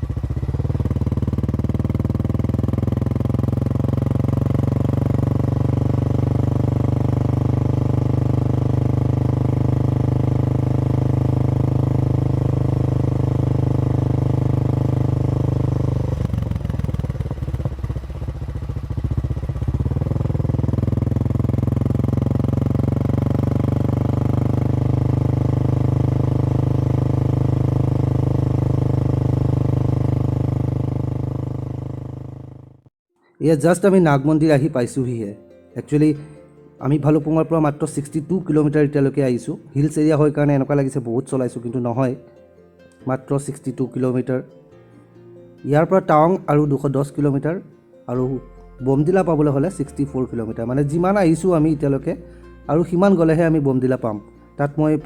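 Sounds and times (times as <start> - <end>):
motorcycle engine running: 0.0 - 32.9, 48.1 - 55.0.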